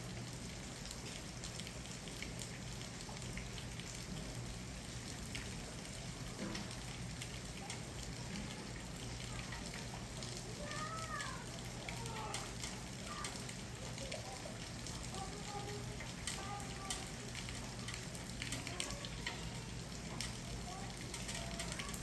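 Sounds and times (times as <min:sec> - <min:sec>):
steady rain falling: 0:00.0 - 0:22.0
faint distant voices: 0:06.3 - 0:22.0.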